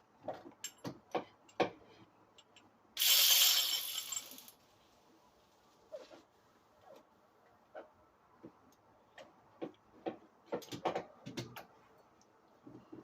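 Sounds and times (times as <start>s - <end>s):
metal tools clinking: 3.0s - 4.6s.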